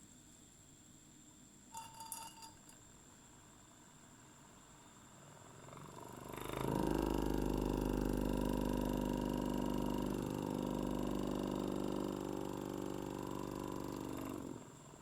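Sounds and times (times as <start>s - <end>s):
small motor spinning: 6.1s - 14.6s.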